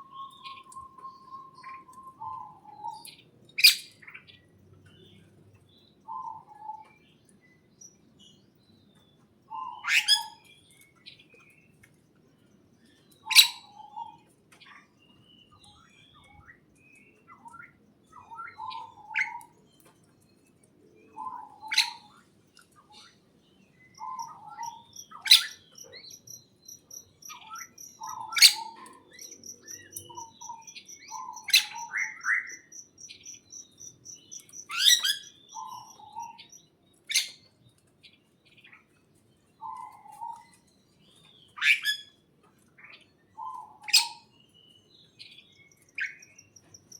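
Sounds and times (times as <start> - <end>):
small birds chirping: 0.0 - 46.9.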